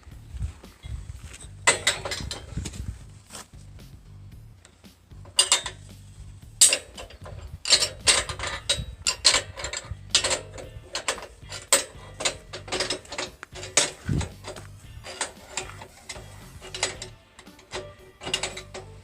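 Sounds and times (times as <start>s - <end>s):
ratchet wrench clicking: 4.6s - 19.0s.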